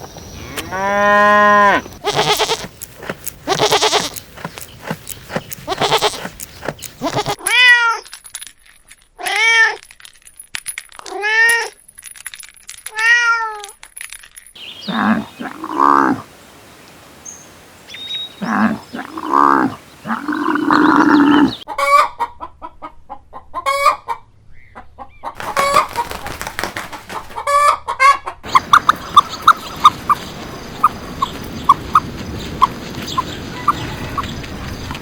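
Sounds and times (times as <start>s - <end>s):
chickens calling: 0.0s - 7.4s, 14.6s - 24.2s, 24.8s - 35.0s
chickens clucking: 1.9s - 7.4s, 18.4s - 35.0s.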